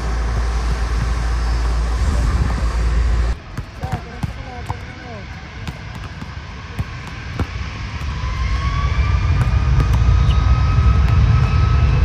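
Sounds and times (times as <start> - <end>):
faint rising whine: 0.0 - 3.6, 6.3 - 12.0
aircraft engines rumbling: 0.0 - 12.0.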